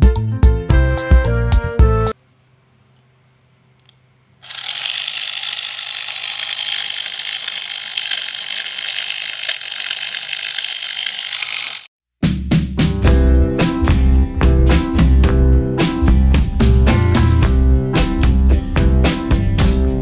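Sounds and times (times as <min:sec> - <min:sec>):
gears ratcheting rattle: 0:04.4 - 0:11.9.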